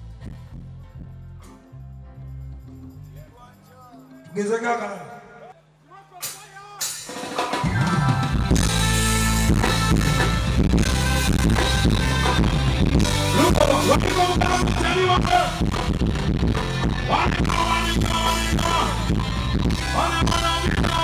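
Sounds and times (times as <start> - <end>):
bass notes: 0.0 - 3.4, 7.7 - 21.0
drums: 0.0 - 4.4, 5.7 - 21.0
live band playing: 6.2 - 21.0
electric guitar: 7.5 - 21.0.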